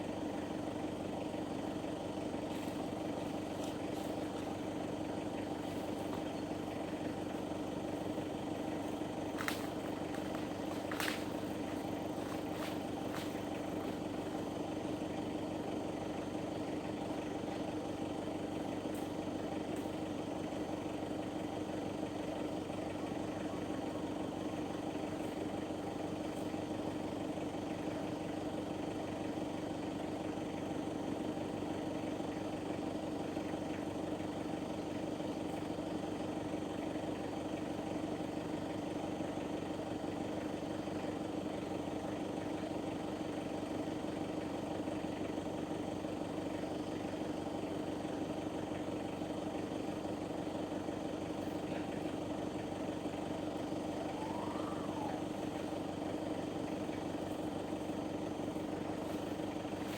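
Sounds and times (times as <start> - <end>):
vehicle engine running: 0.0 - 59.9.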